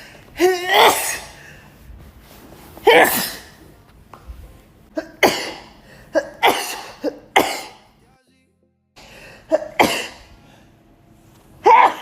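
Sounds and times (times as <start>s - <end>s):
woman sneezing: 0.4s - 1.4s, 2.8s - 3.6s, 11.6s - 12.0s.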